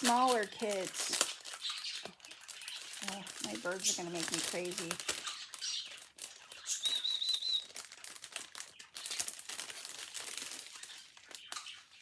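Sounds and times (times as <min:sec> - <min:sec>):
pet birds chirping: 0:00.0 - 0:09.3, 0:10.5 - 0:12.0
plastic packaging crinkling: 0:00.0 - 0:12.0
bird warbling trill: 0:06.6 - 0:07.7.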